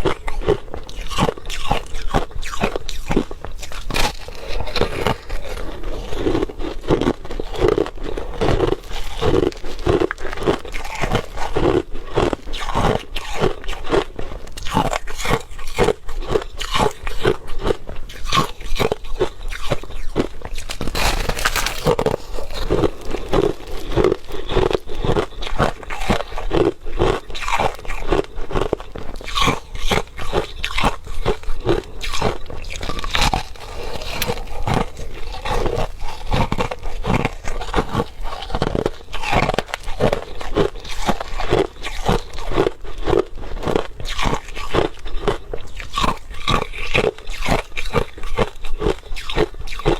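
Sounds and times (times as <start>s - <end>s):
crushed ice crunching: 18.4s - 42.7s.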